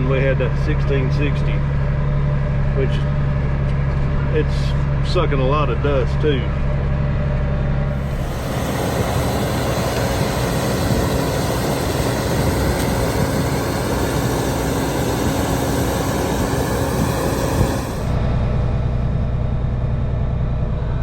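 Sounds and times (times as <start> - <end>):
engine hum: 0.0 - 21.0
combine harvester rushing noise: 4.2 - 19.2.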